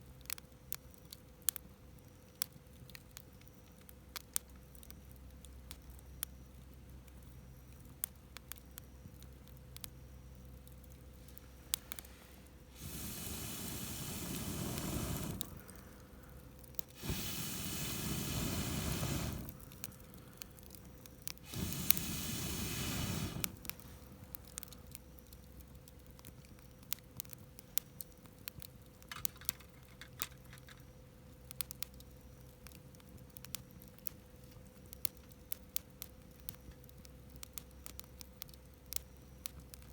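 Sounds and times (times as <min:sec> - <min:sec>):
campfire crackling and popping: 0:00.0 - 0:39.9
air blown through fire pipe: 0:12.7 - 0:15.7, 0:16.9 - 0:19.6, 0:21.4 - 0:23.8.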